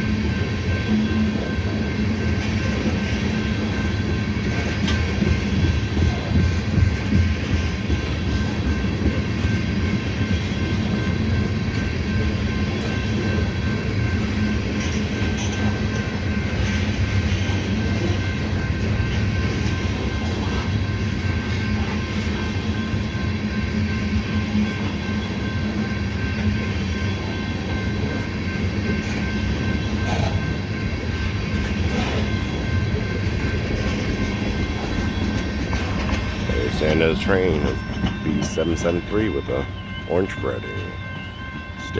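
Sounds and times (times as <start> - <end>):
train wheels rumbling on track: 0.0 - 41.9
faint steady high tones: 21.2 - 41.9.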